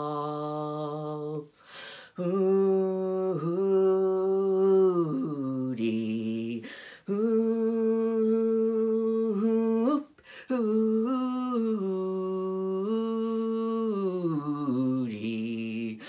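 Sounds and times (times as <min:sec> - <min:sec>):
man breathing: 0:01.5 - 0:02.2, 0:06.6 - 0:07.1, 0:10.2 - 0:10.5
man singing yodel notes: 0:02.2 - 0:16.0.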